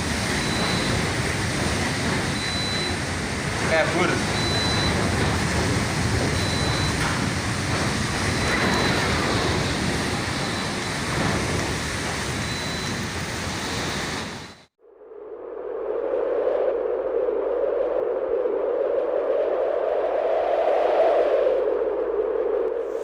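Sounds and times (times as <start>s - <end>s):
wind buffeting microphone: 0.0s - 14.6s
storm wind rushing: 0.0s - 23.0s.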